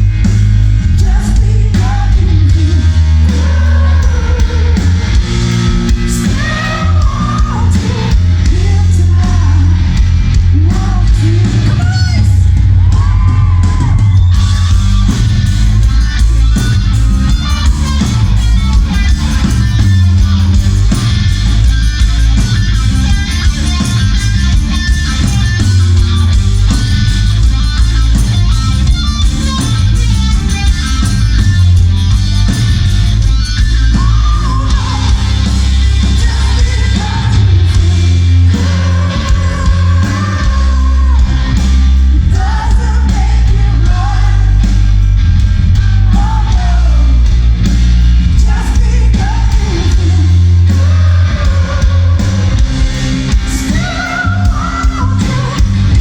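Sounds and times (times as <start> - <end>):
live rock band playing: 0.0 - 56.0
person singing lead vocal: 0.8 - 15.2, 33.4 - 45.0, 46.0 - 47.5, 48.3 - 56.0.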